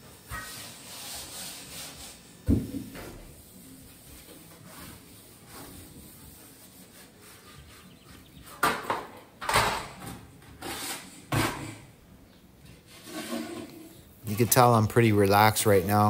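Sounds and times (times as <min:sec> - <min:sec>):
scraping on shower wall: 0:06.6 - 0:11.8, 0:12.8 - 0:14.8.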